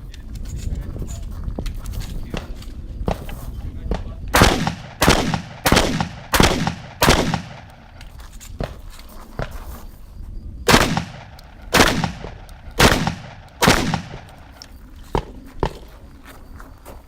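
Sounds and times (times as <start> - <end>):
shotgun shots: 2.3 - 8.0, 10.7 - 14.6.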